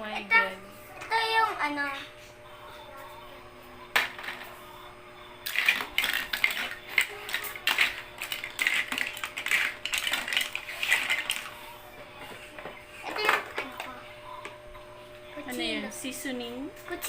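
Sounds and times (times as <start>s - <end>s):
toy kitchen pieces clattering: 5.4s - 11.6s, 13.1s - 13.9s.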